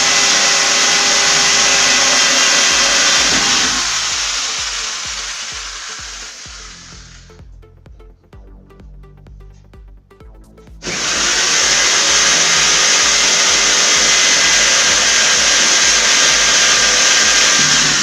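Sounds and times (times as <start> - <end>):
handheld power tool running: 0.0 - 7.3, 10.8 - 18.0
soft background music: 3.5 - 11.0.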